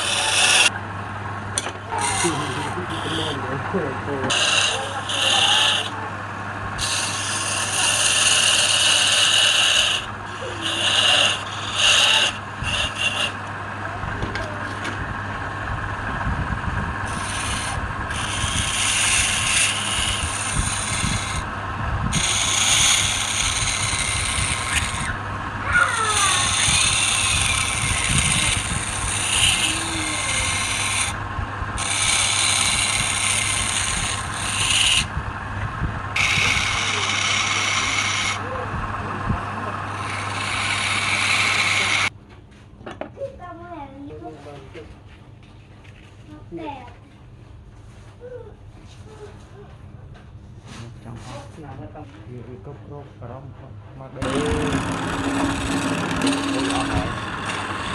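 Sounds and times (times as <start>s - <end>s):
tool scraping wood on lathe: 0.0s - 0.7s, 1.6s - 6.0s, 6.8s - 13.6s, 17.0s - 42.1s, 54.2s - 57.9s.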